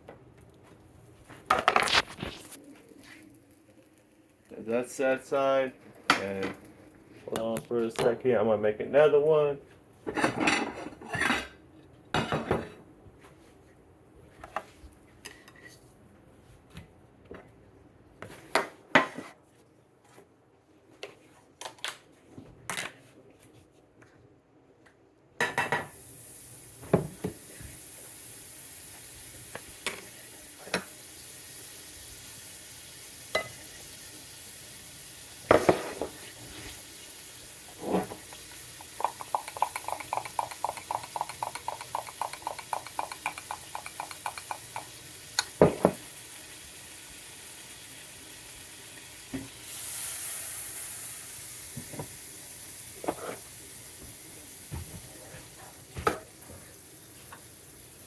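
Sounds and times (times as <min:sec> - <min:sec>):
frying sizzle: 0:01.1 - 0:07.4, 0:25.4 - 0:58.0
utensils clinking against pan: 0:38.8 - 0:44.9.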